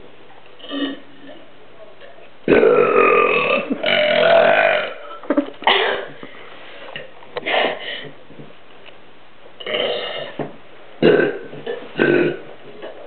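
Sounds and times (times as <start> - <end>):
man burping: 0.6 - 1.1, 2.5 - 6.2, 9.6 - 10.4, 11.0 - 12.9.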